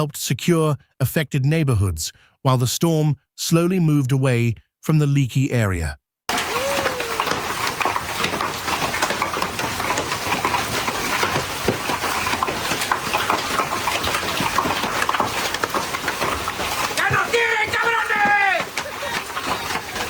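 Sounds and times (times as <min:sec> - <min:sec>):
hail pelting down: 0:06.3 - 0:20.0.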